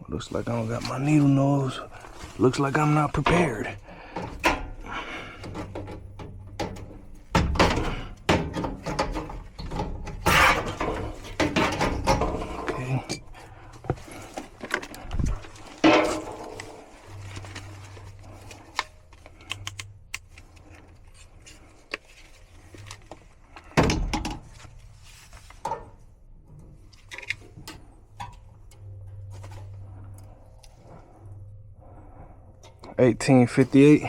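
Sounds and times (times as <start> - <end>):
handling clicks taps and rustling: 5.4 - 17.7.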